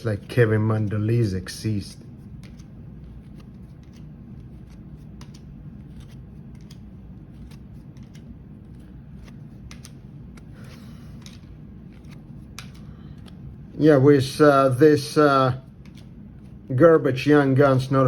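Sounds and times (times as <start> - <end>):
trading cards flicking: 2.2 - 13.8, 15.6 - 16.7.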